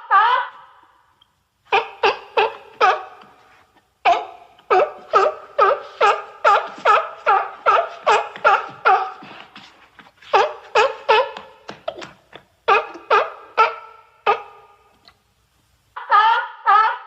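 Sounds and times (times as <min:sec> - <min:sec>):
seal barking: 0:01.7 - 0:09.6, 0:12.7 - 0:14.8.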